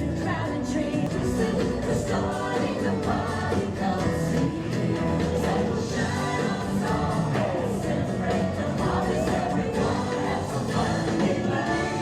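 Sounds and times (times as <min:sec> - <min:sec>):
parade music with singing: 0:00.0 - 0:12.0.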